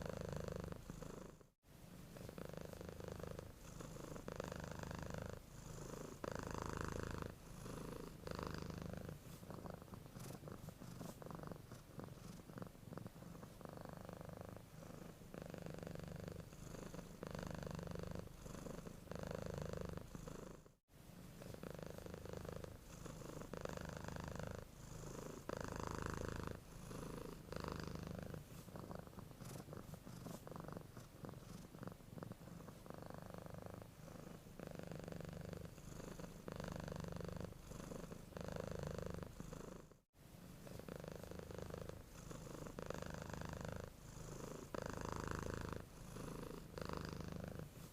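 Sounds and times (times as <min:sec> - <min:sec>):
cat purring: 0:00.0 - 0:47.9.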